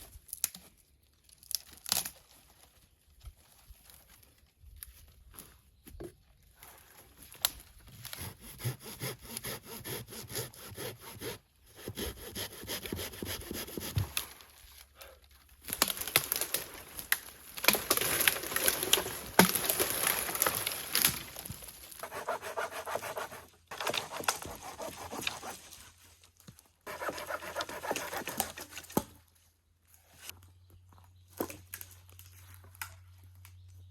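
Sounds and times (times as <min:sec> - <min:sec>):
hand saw cutting wood: 0:08.1 - 0:14.2, 0:22.0 - 0:25.8, 0:26.9 - 0:29.1.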